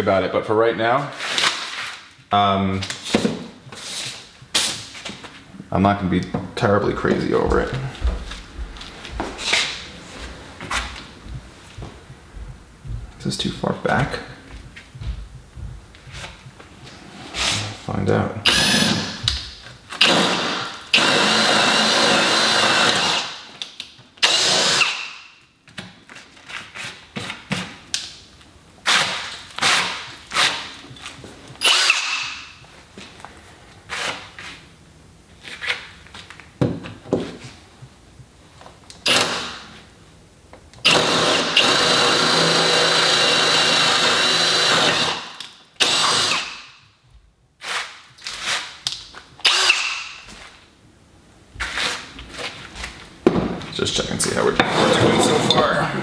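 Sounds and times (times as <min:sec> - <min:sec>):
electric drill boring through wood: 0:18.5 - 0:19.3, 0:20.0 - 0:23.4, 0:24.2 - 0:25.1, 0:31.6 - 0:32.4, 0:40.8 - 0:46.6, 0:49.4 - 0:50.0.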